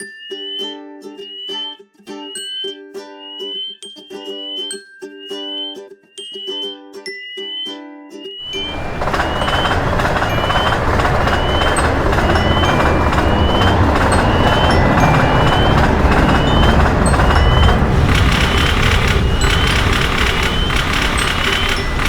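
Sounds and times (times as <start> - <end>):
train passing: 8.4 - 22.0
crossing signal electronic chirp: 8.5 - 22.0.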